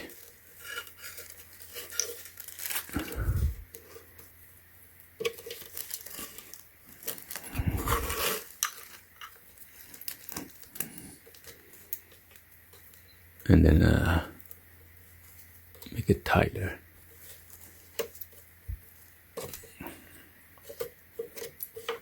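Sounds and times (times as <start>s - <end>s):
mesh bag rustling: 0.0s - 4.3s, 5.2s - 11.9s, 17.0s - 22.0s.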